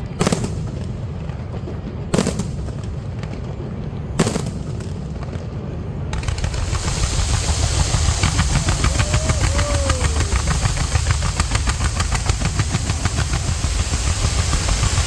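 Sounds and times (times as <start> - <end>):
firework bangs: 0.0 - 15.0
firework crackling: 0.0 - 15.0
low rumble: 6.1 - 15.0.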